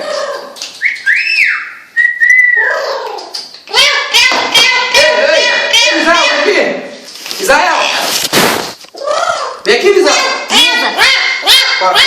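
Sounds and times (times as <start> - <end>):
parrot whistling: 0.8 - 3.0
parrot chattering calls: 9.0 - 12.0.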